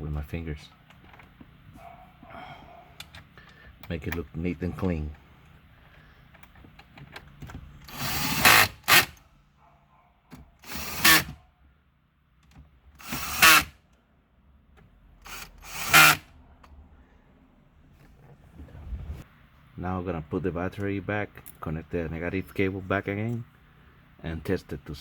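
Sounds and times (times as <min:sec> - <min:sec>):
power screwdriver driving screws: 0:07.8 - 0:09.2, 0:10.6 - 0:11.4, 0:13.0 - 0:13.7, 0:15.3 - 0:16.3.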